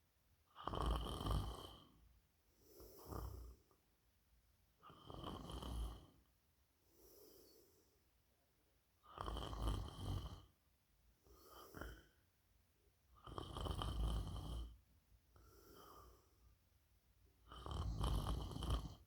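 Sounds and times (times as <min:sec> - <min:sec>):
person snoring: 0:00.6 - 0:01.9, 0:02.8 - 0:03.7, 0:04.9 - 0:06.2, 0:09.1 - 0:10.5, 0:11.3 - 0:12.2, 0:13.2 - 0:14.7, 0:17.5 - 0:19.0.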